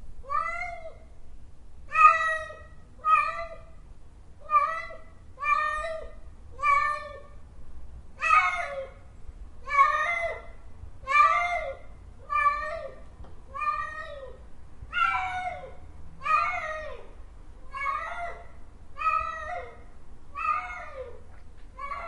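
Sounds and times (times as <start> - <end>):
cat meowing: 0.2 - 1.0, 1.9 - 3.6, 4.5 - 7.3, 11.1 - 17.1, 17.7 - 19.8, 20.4 - 22.0.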